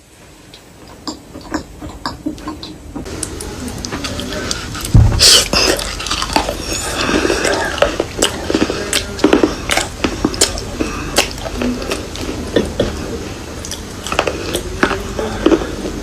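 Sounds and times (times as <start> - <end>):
dull thump: 4.9 - 5.4.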